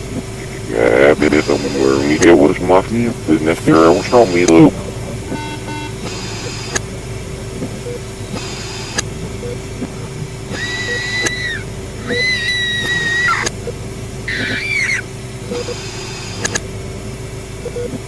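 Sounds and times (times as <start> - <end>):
electrical hum: 0.0 - 18.0
low noisy rumble: 0.0 - 18.0
sharp clicks: 12.1 - 16.7.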